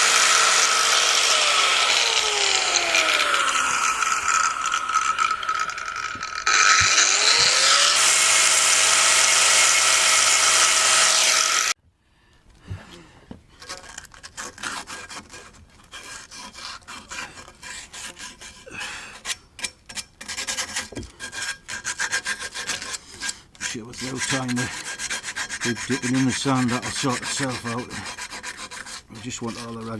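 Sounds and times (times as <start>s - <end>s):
hand sanding strokes: 0.0s - 11.7s, 13.7s - 19.4s, 20.2s - 29.9s
small power tool running: 0.0s - 11.8s.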